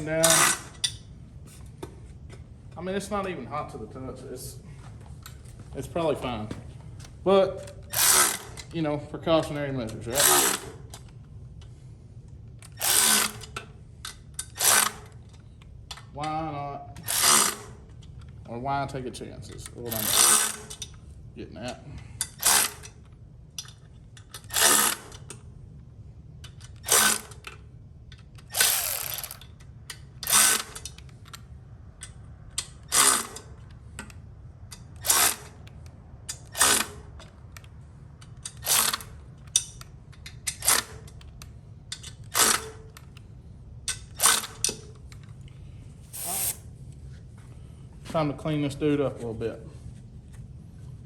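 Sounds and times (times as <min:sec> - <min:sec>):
ratchet wrench clicking: 0:00.0 - 0:01.0, 0:07.6 - 0:08.7, 0:09.4 - 0:11.7, 0:12.6 - 0:16.1, 0:17.0 - 0:18.3, 0:19.5 - 0:21.0, 0:22.2 - 0:25.5, 0:26.4 - 0:45.3, 0:46.2 - 0:46.6.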